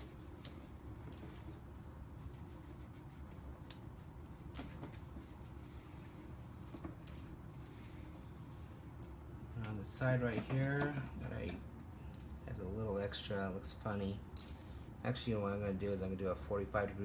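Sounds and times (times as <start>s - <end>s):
vinyl film rubbing: 0.0s - 11.6s
low steady hum: 0.0s - 17.0s.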